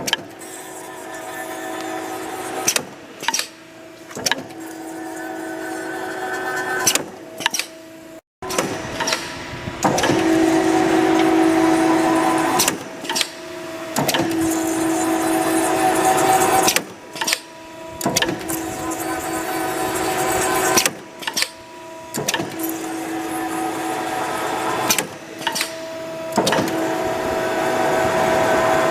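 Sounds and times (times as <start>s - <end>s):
sharp mechanical clicks and clacks: 0.0s - 4.9s, 8.4s - 11.4s, 12.4s - 27.0s
machine motor hum: 0.0s - 28.9s.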